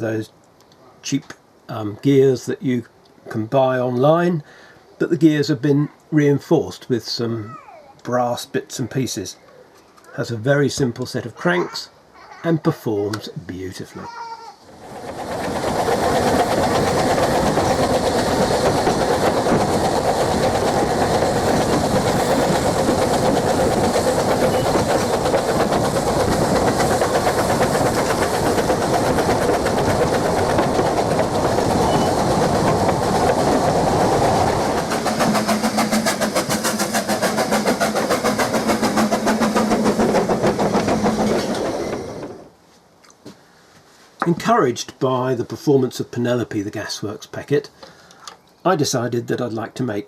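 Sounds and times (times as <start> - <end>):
wheels and gears clicking: 14.8 - 42.4.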